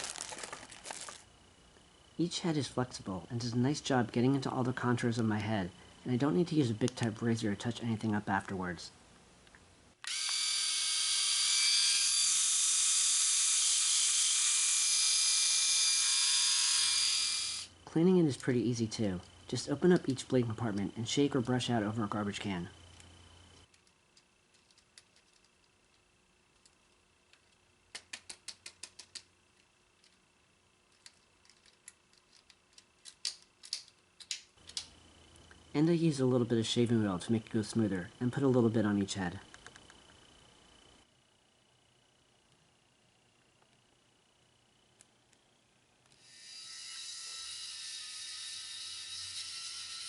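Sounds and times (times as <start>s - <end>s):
electric shaver whirring: 10.0s - 17.8s, 46.2s - 50.0s
small plastic clicks: 30.9s - 34.9s.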